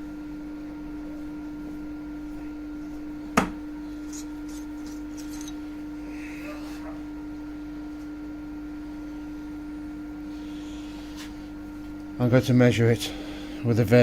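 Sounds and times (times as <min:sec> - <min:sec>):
steady hum: 0:00.0 - 0:14.0.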